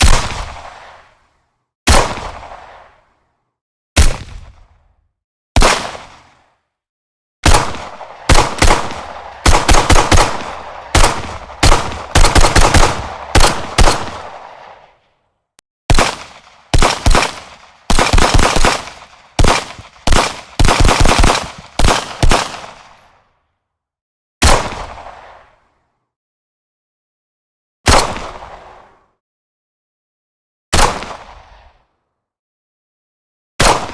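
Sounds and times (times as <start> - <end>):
pistol gunshots with echo: 5.6 - 6.2, 7.4 - 14.7, 15.9 - 23.0, 33.6 - 33.9.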